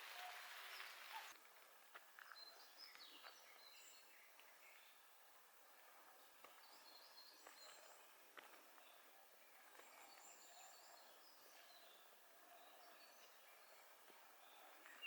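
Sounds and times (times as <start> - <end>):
soft steady hiss: 0.0 - 6.5.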